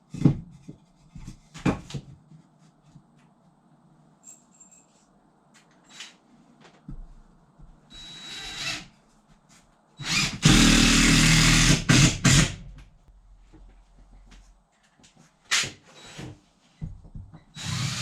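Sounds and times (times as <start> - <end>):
power drill driving a screw: 8.0 - 8.9, 10.0 - 12.6, 17.6 - 18.0.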